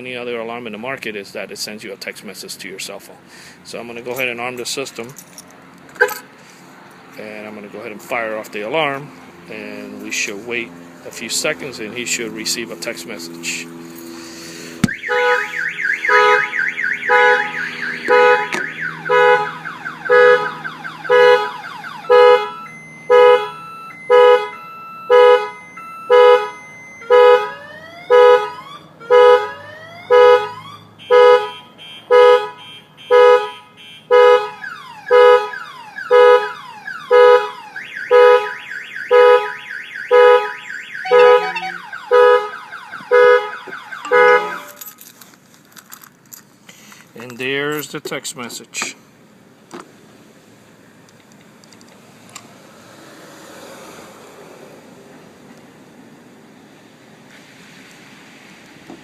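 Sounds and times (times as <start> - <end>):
car horn honking: 6.0 - 6.3, 14.9 - 45.0
car alarm siren: 14.8 - 44.9.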